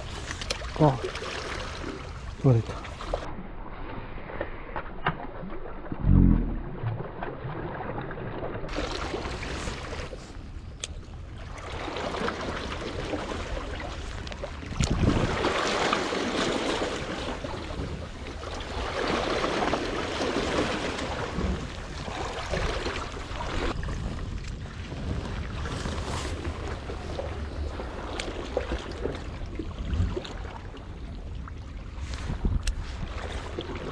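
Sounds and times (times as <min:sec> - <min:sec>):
wind: 0:00.0 - 0:33.9
sea waves washing against rocks: 0:11.6 - 0:29.0.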